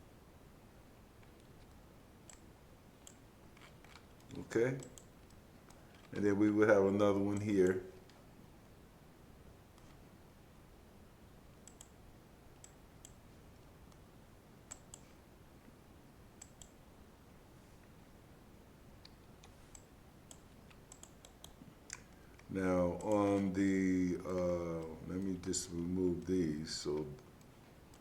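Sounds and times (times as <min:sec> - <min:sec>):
computer mouse clicks: 0:01.2 - 0:06.3, 0:07.2 - 0:08.2, 0:11.6 - 0:12.0, 0:12.6 - 0:13.2, 0:14.6 - 0:15.2, 0:16.4 - 0:16.8, 0:19.0 - 0:23.5, 0:26.9 - 0:28.0.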